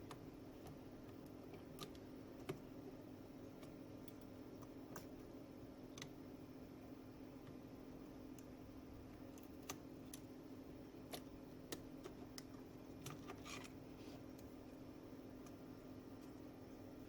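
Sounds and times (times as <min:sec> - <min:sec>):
faint clicks and taps: 0:00.0 - 0:02.7
steady low hum: 0:00.0 - 0:17.0.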